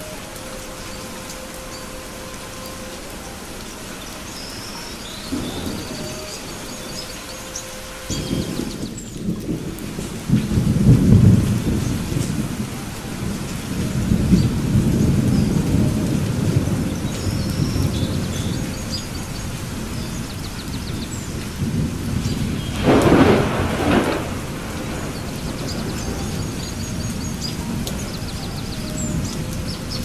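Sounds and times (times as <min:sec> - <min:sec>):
steady rain: 0:00.0 - 0:30.0
thunder rumbling: 0:04.7 - 0:30.0.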